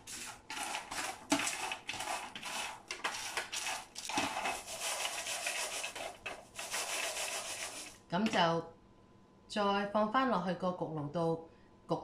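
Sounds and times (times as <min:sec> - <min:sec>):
nuts rattling and scraping on a tray: 0:00.0 - 0:08.0.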